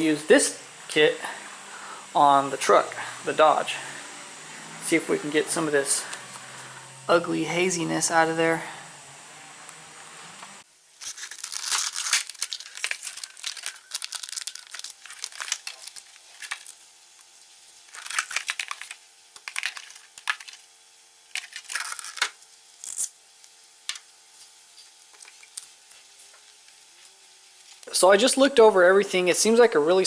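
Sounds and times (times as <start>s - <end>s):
plastic packaging crinkling and tearing: 10.9s - 20.7s, 21.3s - 23.2s, 23.9s - 27.9s.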